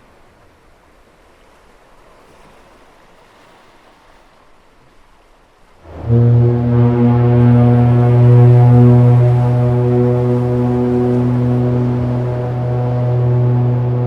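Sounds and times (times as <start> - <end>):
surf and wind hiss: 0.0 - 6.0, 7.2 - 14.0
deep foghorn blast: 5.8 - 14.0.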